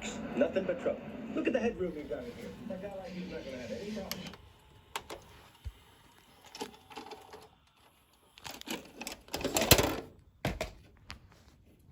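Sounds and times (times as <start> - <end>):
video player mechanism clattering: 8.4 - 10.1.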